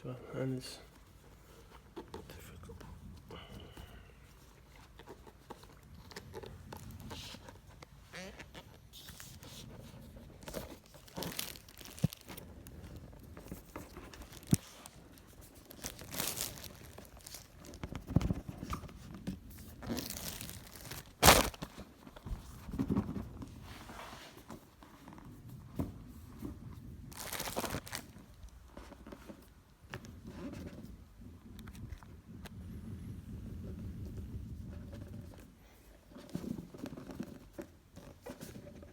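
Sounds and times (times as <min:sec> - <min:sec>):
plastic and paper crinkling: 0:00.7 - 0:25.3, 0:27.1 - 0:30.8.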